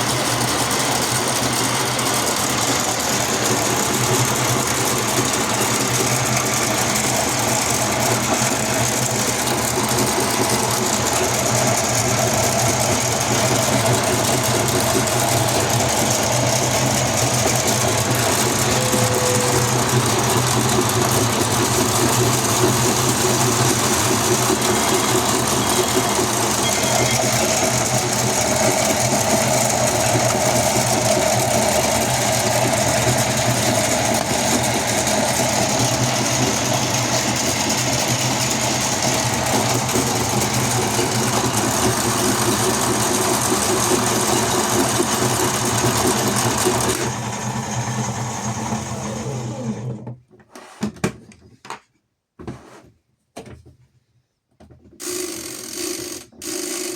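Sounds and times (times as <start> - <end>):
small electric motor humming: 10.6 - 41.7, 55.0 - 56.9.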